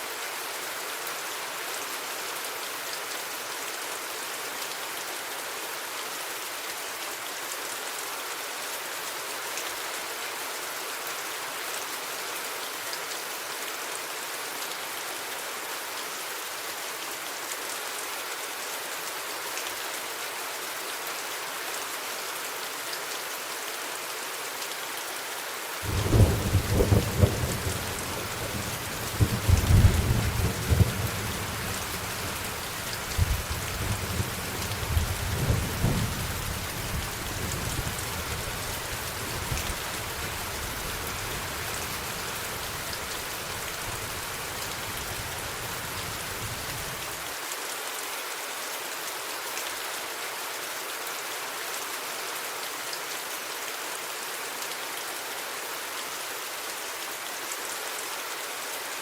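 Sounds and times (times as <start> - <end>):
steady rain falling: 0.0 - 59.0
thunder rumbling: 25.9 - 32.4.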